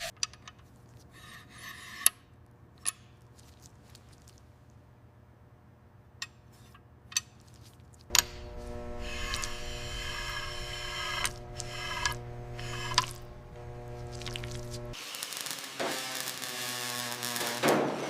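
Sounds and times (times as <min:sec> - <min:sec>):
machine hum with high whine: 0:08.1 - 0:15.0.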